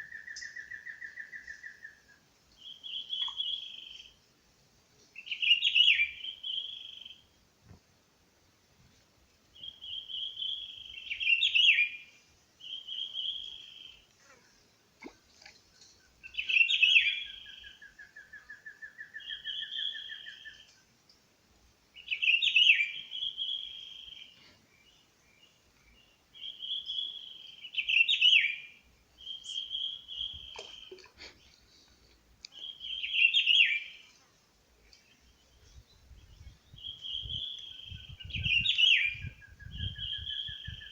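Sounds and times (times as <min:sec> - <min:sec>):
bird singing high song phrase: 0:00.0 - 0:04.2, 0:05.2 - 0:07.2, 0:09.6 - 0:14.0, 0:16.2 - 0:20.8, 0:22.0 - 0:31.0, 0:32.5 - 0:34.1, 0:34.8 - 0:40.9.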